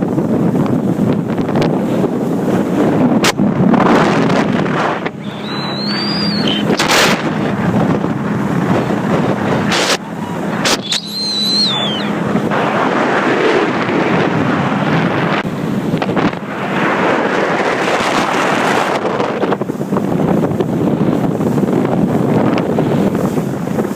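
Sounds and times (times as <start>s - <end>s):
boat engine hum: 0.0s - 23.9s
wind buffeting microphone: 0.0s - 23.9s
high whistling tones: 5.2s - 6.8s, 10.7s - 12.2s.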